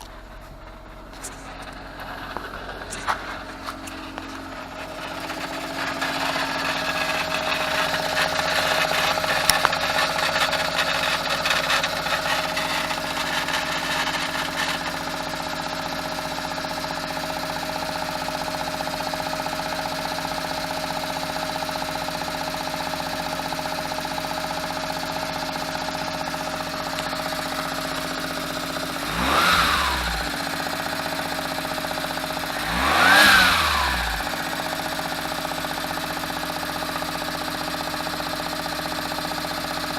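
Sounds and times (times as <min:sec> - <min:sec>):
engine revving: 0:00.0 - 0:16.9, 0:26.3 - 0:39.9
harsh rattle: 0:00.0 - 0:39.9
small engine idling: 0:00.0 - 0:39.9.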